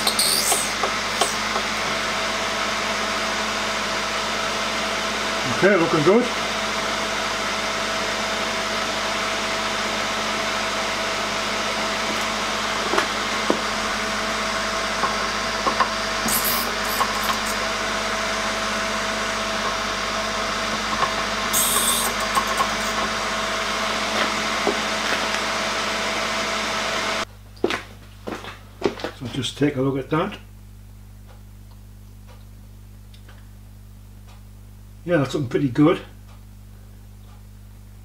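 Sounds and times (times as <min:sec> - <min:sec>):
high-pitched grinding hiss: 0:00.0 - 0:01.5, 0:16.2 - 0:17.7, 0:21.5 - 0:23.0
grinder motor humming: 0:00.0 - 0:27.3.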